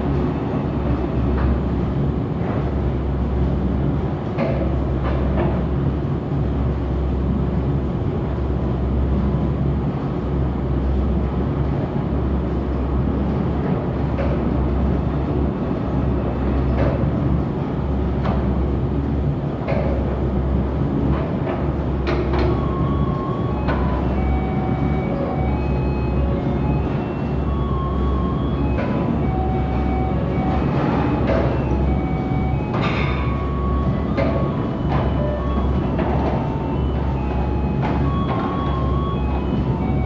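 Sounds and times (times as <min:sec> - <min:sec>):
machine humming in pulses: 0:22.1 - 0:40.0.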